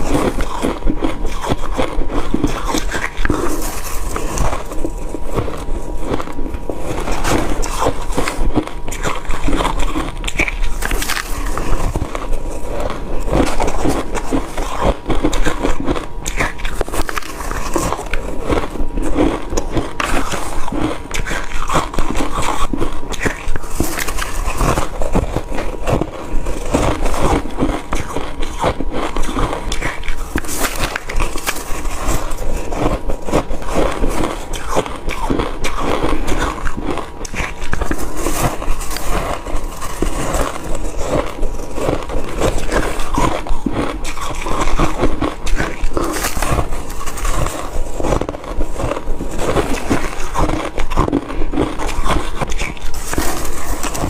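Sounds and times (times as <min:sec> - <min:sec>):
ice being crunched: 0:00.0 - 0:54.0.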